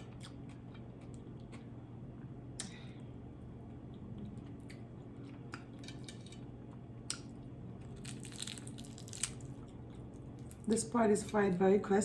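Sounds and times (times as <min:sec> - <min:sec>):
chewing crunchy fried fish: 0:00.0 - 0:01.8, 0:03.6 - 0:10.9.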